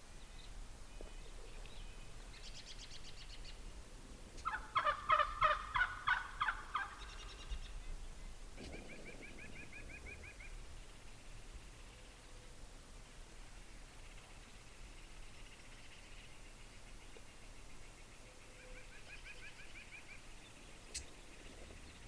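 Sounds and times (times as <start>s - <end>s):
turkey gobbling: 4.4s - 7.4s
bird chirps: 5.4s - 8.0s, 14.0s - 22.0s.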